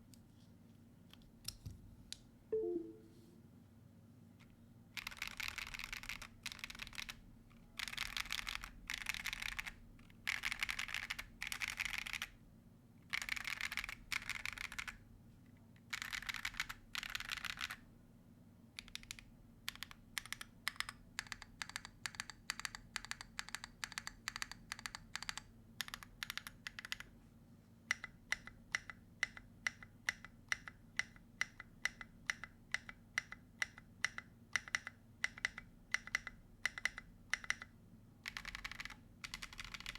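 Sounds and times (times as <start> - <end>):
mechanical keyboard typing: 5.0 - 7.2, 7.8 - 12.3, 13.1 - 15.0, 15.9 - 17.8, 18.8 - 27.1, 32.8 - 39.9.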